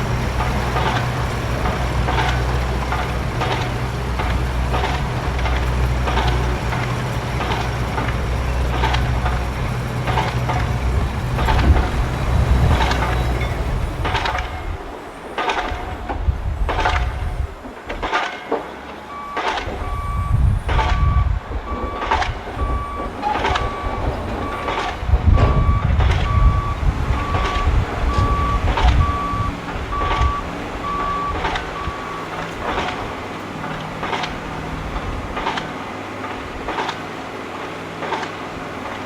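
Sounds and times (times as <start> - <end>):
reversing alarm beeping: 0.0 - 13.8, 19.0 - 33.2
low engine rumble: 0.0 - 17.8, 18.7 - 39.0.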